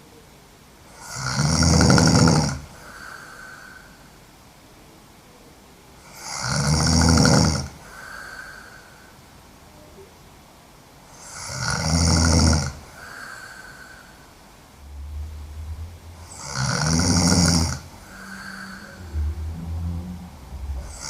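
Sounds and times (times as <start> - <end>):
quiet breaths: 0.0 - 10.2, 11.0 - 21.0
woman snoring: 1.0 - 3.9, 6.1 - 8.9, 11.2 - 14.0, 14.8 - 21.0.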